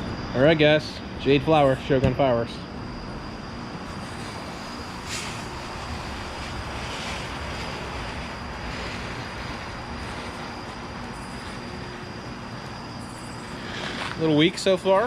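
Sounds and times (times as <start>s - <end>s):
firework fountain hissing: 3.8s - 15.0s.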